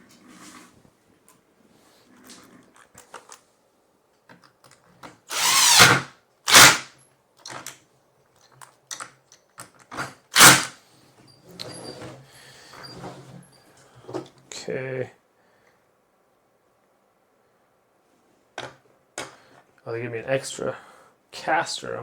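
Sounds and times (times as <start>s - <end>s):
cordless drill driving screws: 5.3s - 6.8s, 10.4s - 10.7s.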